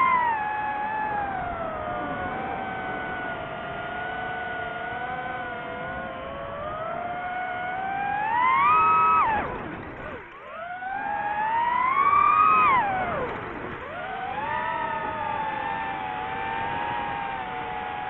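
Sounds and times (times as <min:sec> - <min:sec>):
drone motors whining: 0:00.0 - 0:18.0.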